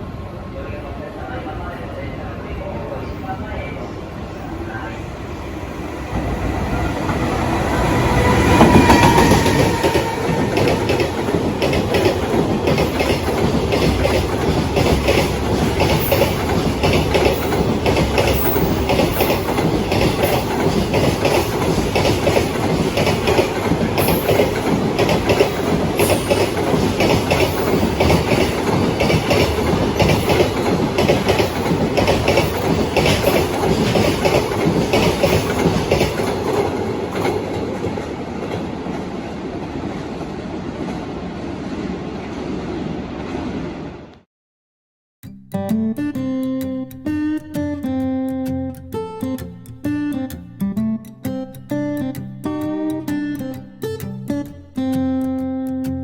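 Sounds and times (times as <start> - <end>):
electric locomotive passing: 0.0 - 44.2
wagon wheels clattering over rail joints: 9.4 - 38.7.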